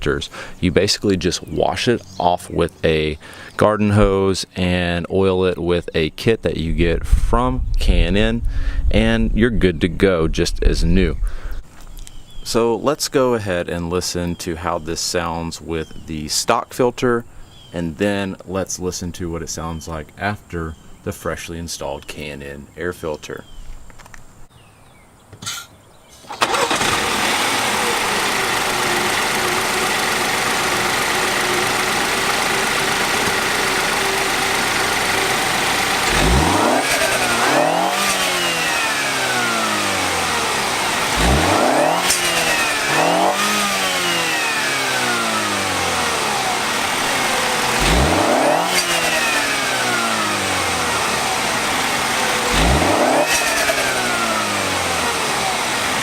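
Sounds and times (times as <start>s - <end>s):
car engine idling and revving: 26.3s - 56.0s.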